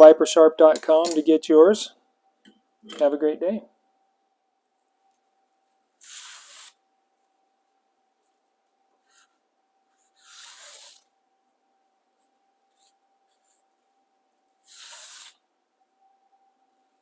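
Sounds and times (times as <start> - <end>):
faint steady hum: 0.0 - 17.0
rubbing scraping strokes: 14.6 - 15.4.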